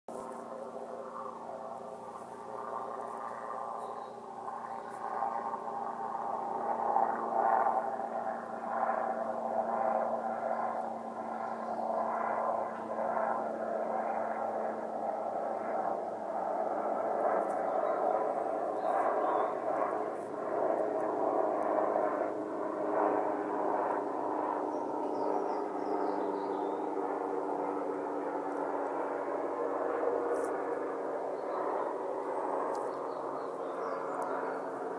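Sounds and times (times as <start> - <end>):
droning tones over rushing hiss: 0.1 - 9.1.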